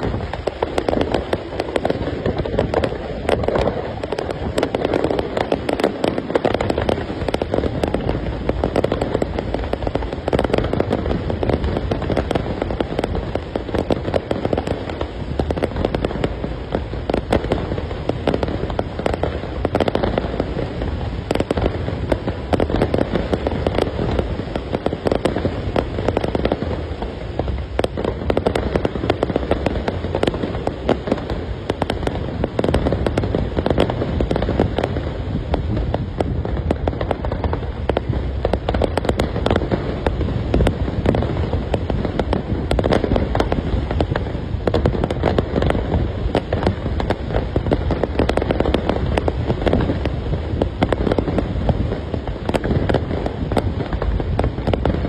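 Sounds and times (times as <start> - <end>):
fireworks bangs: 0.0 - 55.0.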